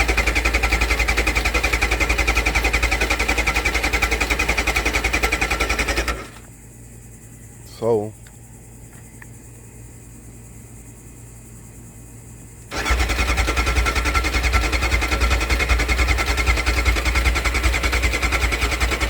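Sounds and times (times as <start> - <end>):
starter motor cranking engine: 0.0 - 6.5, 12.7 - 19.0.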